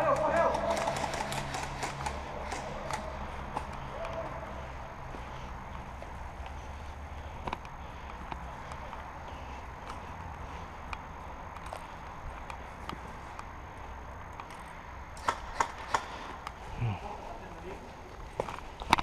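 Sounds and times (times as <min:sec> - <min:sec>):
airsoft guns firing: 0:00.0 - 0:04.2, 0:15.2 - 0:16.3.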